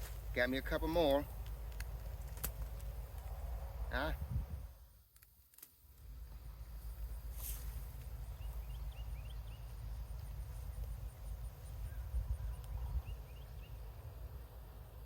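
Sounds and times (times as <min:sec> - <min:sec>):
wind on microphone: 0:02.9 - 0:04.8, 0:07.0 - 0:14.4
small bird chirping: 0:07.9 - 0:13.9.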